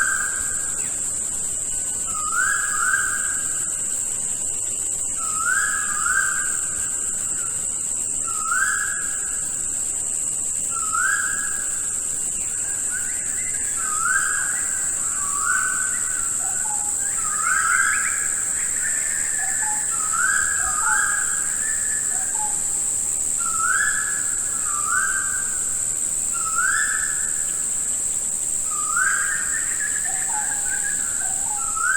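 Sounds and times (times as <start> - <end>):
high-pitched insect drone: 0.0 - 31.9.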